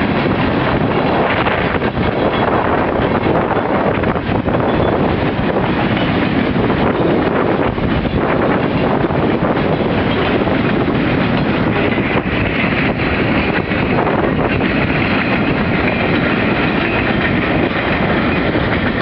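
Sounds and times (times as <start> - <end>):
freight train wheels on rails: 0.0 - 19.0.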